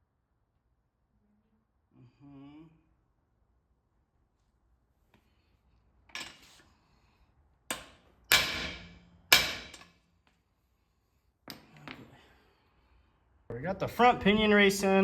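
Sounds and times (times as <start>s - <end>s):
hammer striking metal: 7.7s - 10.0s.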